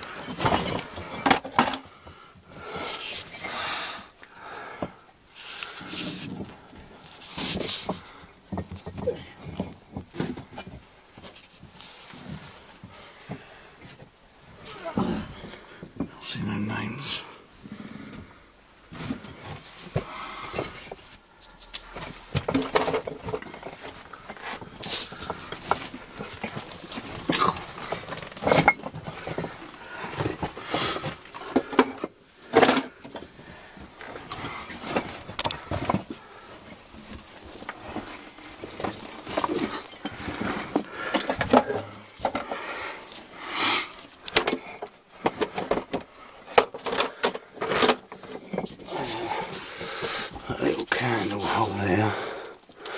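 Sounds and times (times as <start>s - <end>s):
bricks and rubble shifting: 0.0s - 2.1s, 21.9s - 43.3s
rustling: 17.9s - 52.2s.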